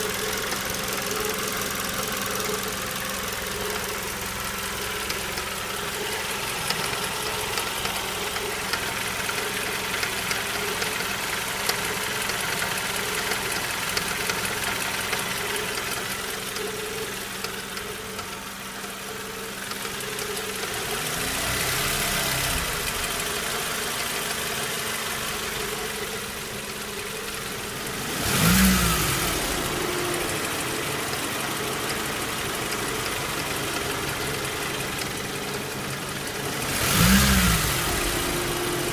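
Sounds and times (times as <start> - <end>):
car engine idling with ticking: 0.0 - 38.9
engine revving: 20.1 - 38.9.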